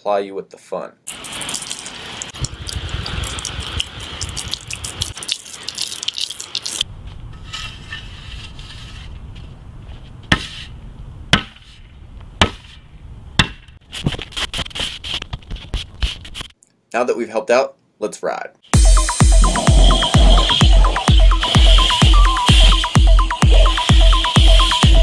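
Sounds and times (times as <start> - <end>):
hose water spraying onto dirt: 1.1 - 6.8.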